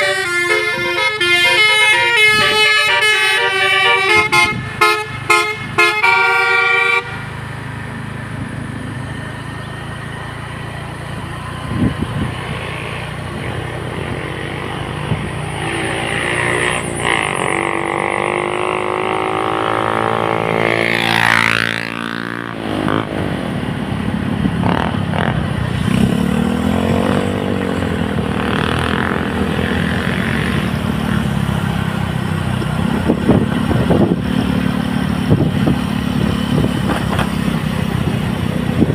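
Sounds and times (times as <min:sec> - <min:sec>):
multi-tone bus horn: 0:00.0 - 0:07.4
engine passing by: 0:00.0 - 0:38.9
road vehicle engines: 0:00.0 - 0:38.9.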